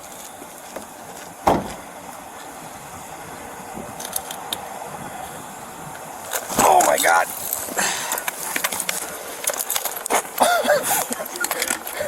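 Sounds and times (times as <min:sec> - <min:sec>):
sharp knock: 0:01.5 - 0:02.0.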